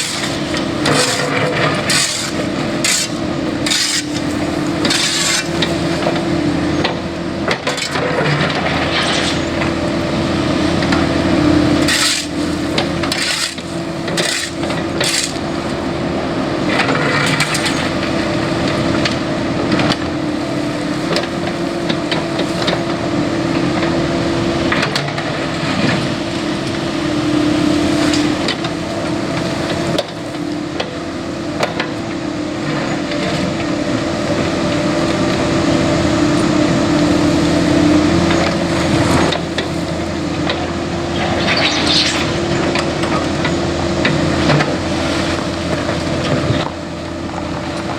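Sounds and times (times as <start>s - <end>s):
clicks and scraping: 0.0s - 6.2s, 6.8s - 9.7s, 11.8s - 15.5s, 40.4s - 46.8s
bucket digging into road: 0.0s - 10.0s, 10.9s - 15.9s, 36.4s - 46.8s
excavator engine and hydraulics humming: 0.0s - 47.9s.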